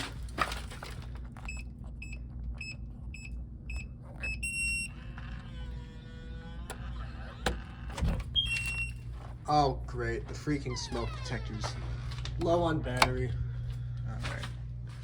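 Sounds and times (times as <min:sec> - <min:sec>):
steady low hum: 0:00.0 - 0:15.0
smoke detector beeping: 0:01.5 - 0:05.0, 0:08.4 - 0:09.0.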